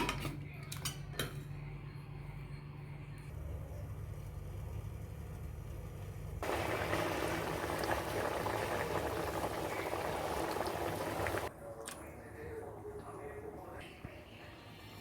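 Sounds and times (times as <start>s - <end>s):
low background hum: 0.0s - 15.0s
curry bubbling in a pot: 6.4s - 11.5s.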